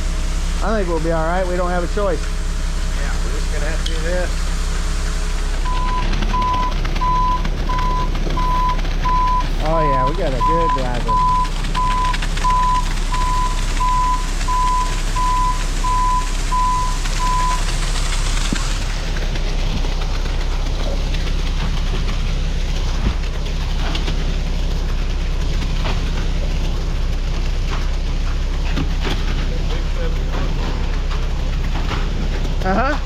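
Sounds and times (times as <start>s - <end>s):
diesel engine rumble: 0.0s - 33.0s
truck backup alarm beeping: 5.6s - 18.2s.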